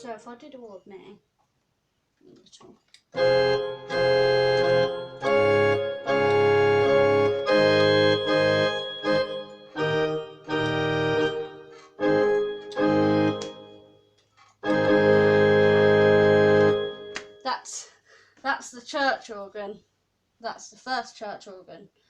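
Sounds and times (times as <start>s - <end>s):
church organ chords: 3.2s - 14.0s, 14.6s - 17.4s.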